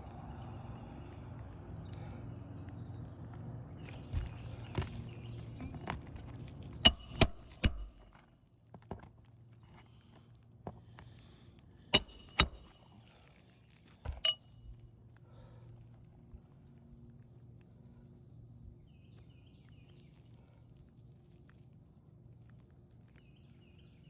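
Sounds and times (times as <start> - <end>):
hammer driving nails into shingles: 6.8 - 8.1, 12.0 - 13.0.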